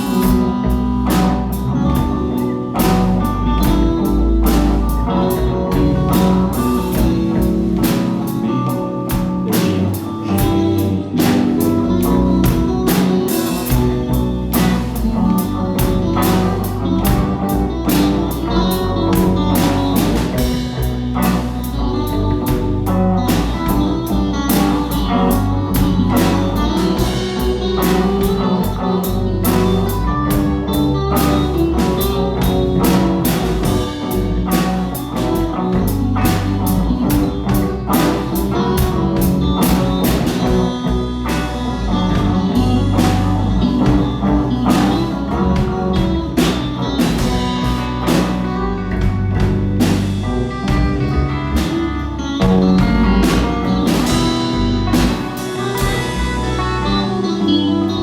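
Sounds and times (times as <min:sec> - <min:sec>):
drum kit beat: 0:00.0 - 0:58.0
electric guitar: 0:00.0 - 0:58.0
rock band playing: 0:00.0 - 0:58.0.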